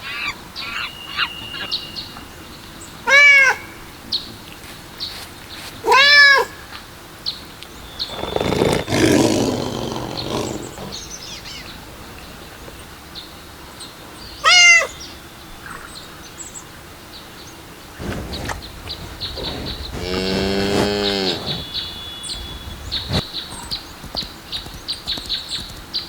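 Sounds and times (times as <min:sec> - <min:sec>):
small birds chirping: 0:00.0 - 0:26.0
cat meow: 0:05.9 - 0:06.5, 0:14.4 - 0:15.0
rough noisy growl: 0:08.0 - 0:12.9, 0:17.8 - 0:24.0.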